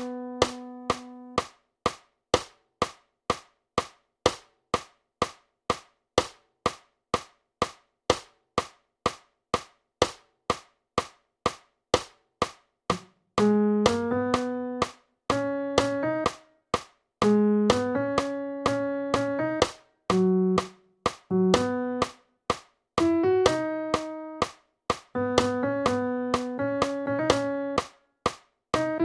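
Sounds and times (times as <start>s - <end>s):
music notes playing: 17.2s - 20.7s, 21.3s - 22.1s.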